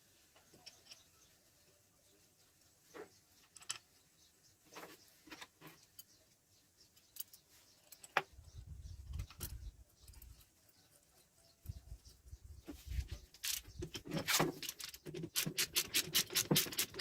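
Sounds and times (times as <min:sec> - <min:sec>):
metal parts and tools clinking: 0:00.4 - 0:01.3, 0:03.4 - 0:04.0, 0:06.8 - 0:08.4, 0:09.0 - 0:11.8, 0:13.0 - 0:17.0.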